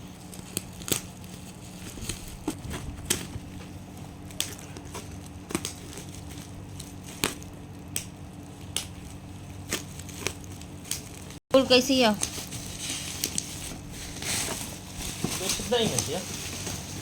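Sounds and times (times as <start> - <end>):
low steady hum: 0.0 - 17.0
plastic packaging clicks and crackles: 0.2 - 9.0, 12.1 - 13.6, 14.2 - 17.0.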